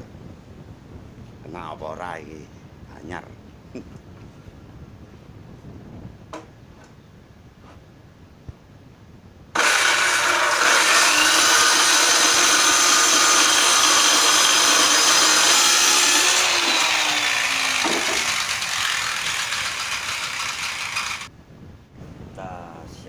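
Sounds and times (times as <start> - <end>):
power tool cutting wood: 9.6 - 21.3.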